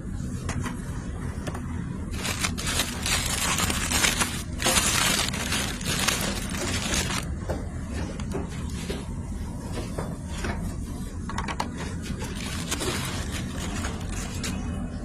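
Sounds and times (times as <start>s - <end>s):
steady low hum: 0.0s - 15.0s
packaging crinkling and rustling: 2.1s - 7.3s, 12.2s - 14.6s.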